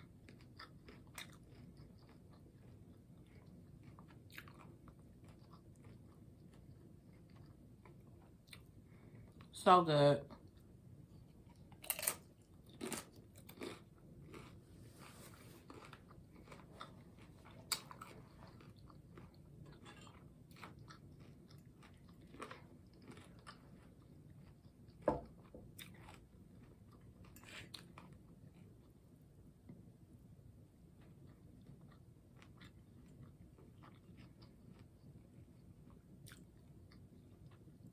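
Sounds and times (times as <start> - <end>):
chewing and crunching: 0.0 - 9.5, 10.2 - 29.2, 30.9 - 37.9.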